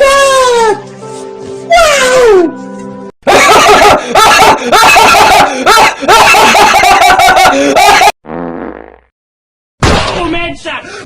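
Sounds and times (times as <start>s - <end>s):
loud laughter: 3.3s - 8.1s.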